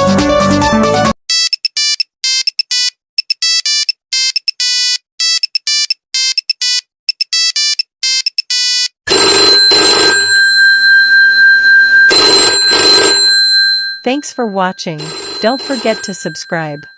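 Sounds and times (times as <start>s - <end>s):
monophonic phone ringtone beeps: 1.3s - 16.9s
loud ringing: 9.1s - 16.9s.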